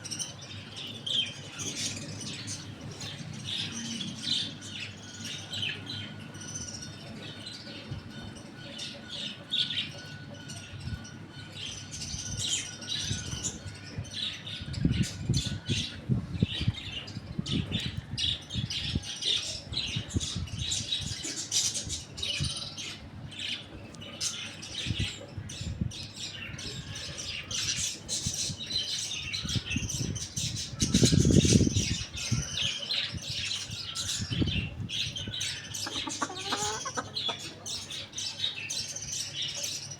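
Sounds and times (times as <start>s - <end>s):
birds chirping and squawking: 0.0s - 39.9s.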